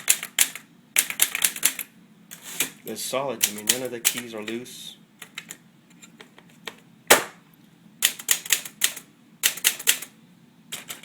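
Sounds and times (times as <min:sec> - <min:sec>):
manual typewriter clacking: 0:03.4 - 0:04.6, 0:08.0 - 0:10.1.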